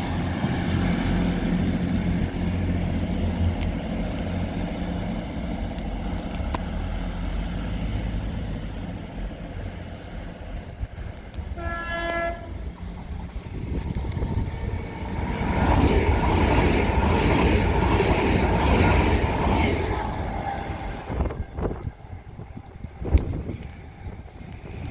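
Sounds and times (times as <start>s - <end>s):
train passing: 0.0s - 24.9s
train horn: 11.5s - 12.6s.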